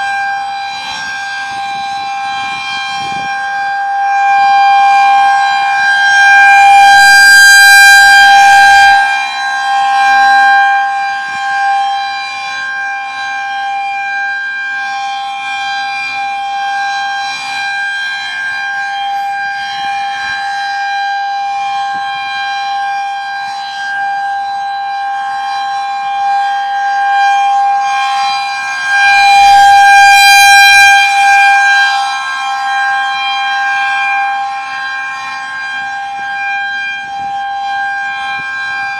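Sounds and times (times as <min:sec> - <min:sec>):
warning siren steady tone: 0:00.0 - 0:38.9.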